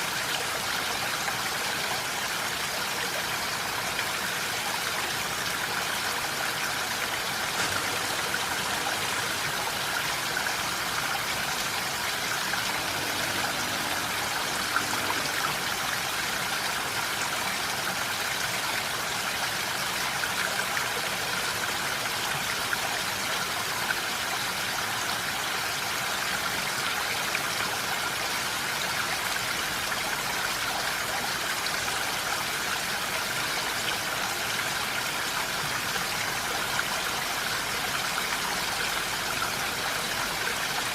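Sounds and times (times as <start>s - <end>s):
steady rain hiss: 0.0s - 22.3s.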